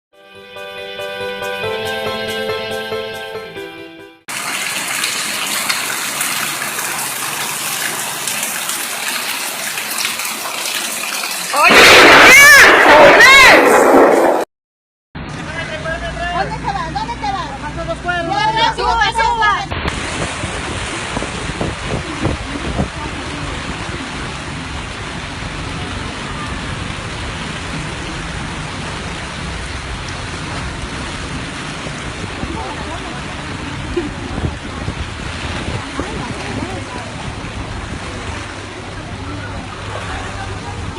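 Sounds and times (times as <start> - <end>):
intro music: 0.2 - 4.3
torrential rain pouring: 4.3 - 14.1, 19.7 - 40.9.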